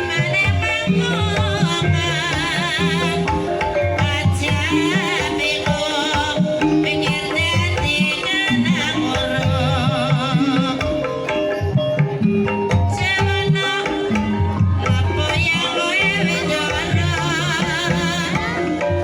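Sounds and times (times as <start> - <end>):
kendang drums: 0.0 - 19.0
ringing metallophone notes: 0.0 - 19.0.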